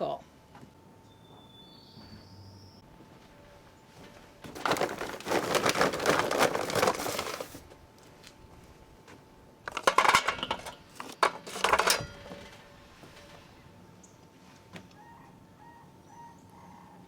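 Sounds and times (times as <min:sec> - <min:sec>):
charcoal clattering into metal can: 0:04.5 - 0:07.6, 0:09.7 - 0:12.7.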